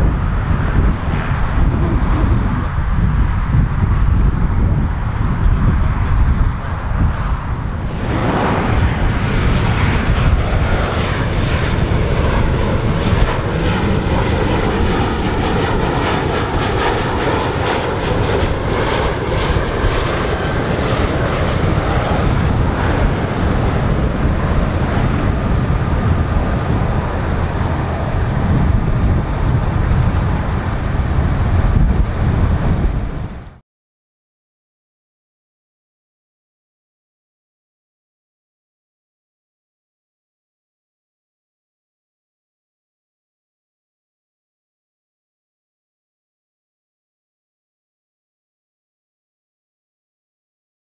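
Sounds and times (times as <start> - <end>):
jet engines rumbling overhead: 0.0 - 33.6.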